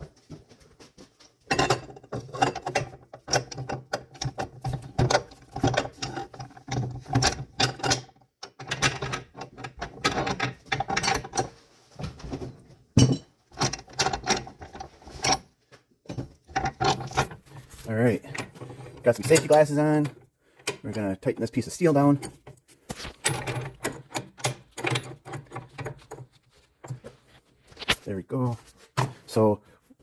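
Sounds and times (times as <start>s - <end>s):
metallic clicks and rattles: 1.4s - 11.5s, 13.0s - 15.5s, 16.1s - 27.0s.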